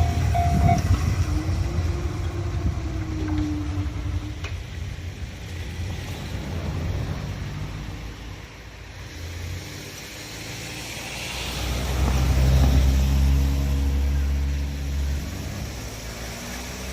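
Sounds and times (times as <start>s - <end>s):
vehicle passing by: 5.4s - 16.9s.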